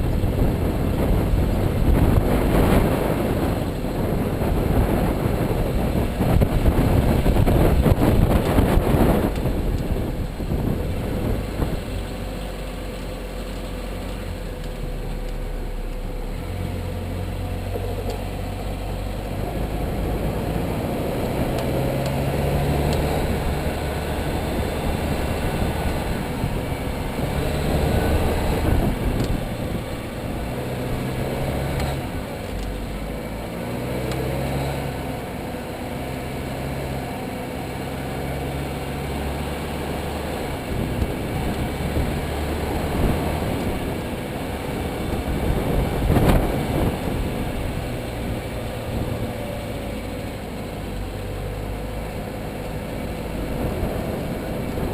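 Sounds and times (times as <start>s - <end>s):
car engine and road rumble: 0.0s - 54.9s.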